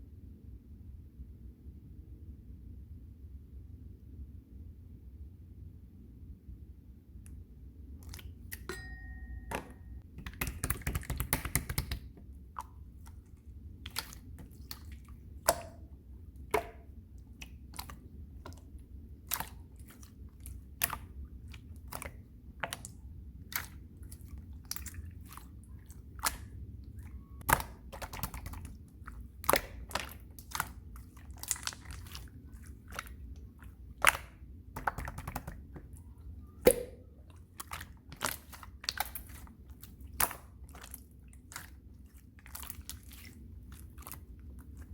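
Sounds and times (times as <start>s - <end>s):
slime squelching and popping: 10.1s - 44.9s.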